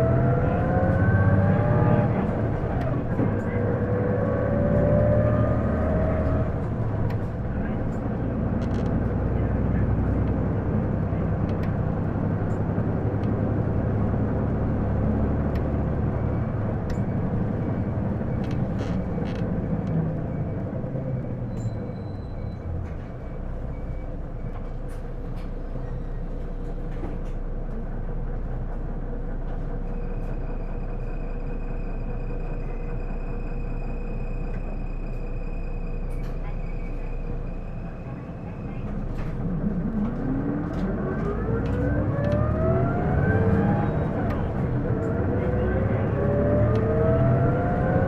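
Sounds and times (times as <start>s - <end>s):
bus diesel engine running: 0.0s - 48.0s.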